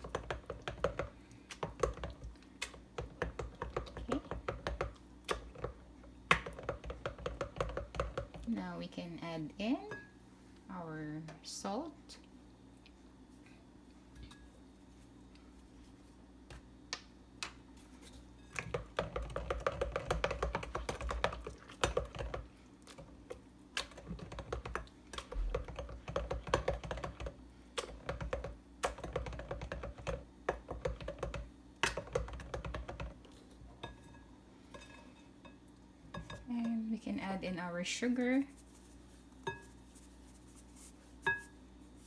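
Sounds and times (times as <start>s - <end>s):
utensil tapping mixing bowl: 0.0s - 8.6s, 18.6s - 34.0s.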